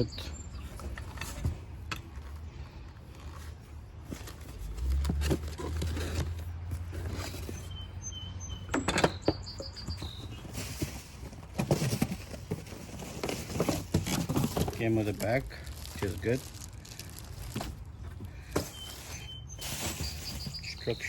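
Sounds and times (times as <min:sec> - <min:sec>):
packaging rustling and crinkling: 0:09.9 - 0:20.8.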